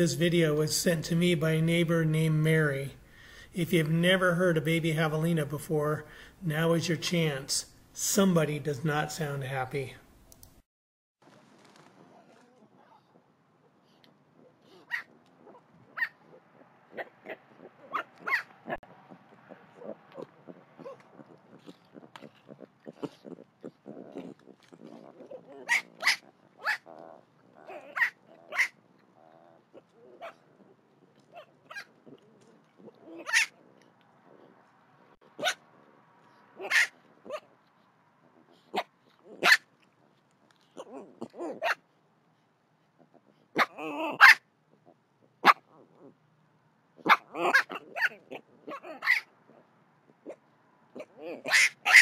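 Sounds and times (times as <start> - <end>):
baby peccaries squealing: 14.4 - 30.4, 31.3 - 34.5, 36.6 - 37.5, 47.0 - 49.3, 51.0 - 52.0.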